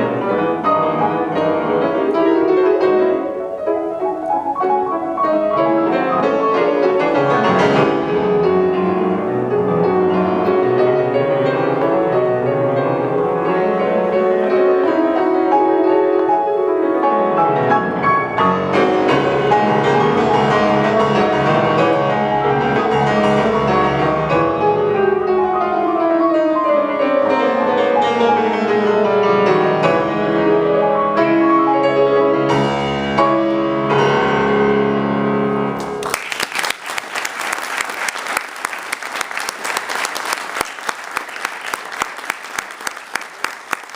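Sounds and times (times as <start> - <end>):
piano playing fast runs: 0.0 - 43.9.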